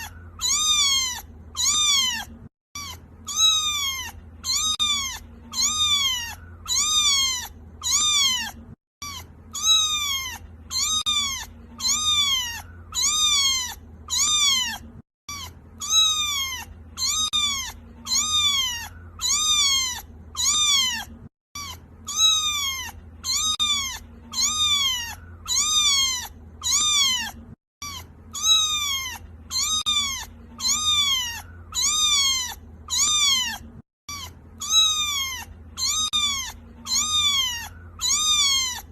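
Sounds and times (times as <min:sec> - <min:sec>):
kitten meowing: 0:00.0 - 0:38.9.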